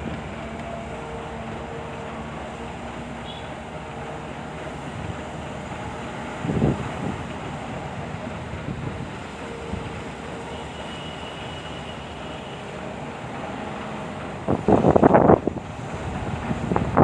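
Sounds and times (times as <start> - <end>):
excavator engine running: 0.0 - 17.0
wind noise on microphone: 4.8 - 10.3, 13.3 - 17.0.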